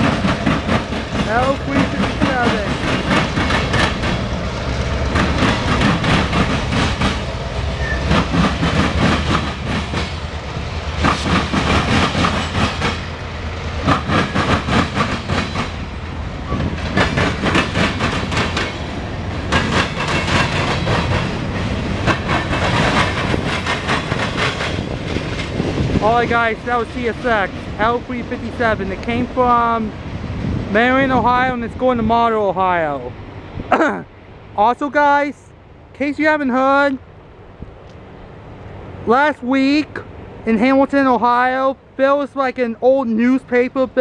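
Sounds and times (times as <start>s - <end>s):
train wheels clacking over rail joints: 0.0s - 10.3s, 10.9s - 13.2s, 13.8s - 15.9s, 16.5s - 28.0s
freight train rumbling past: 0.0s - 44.0s.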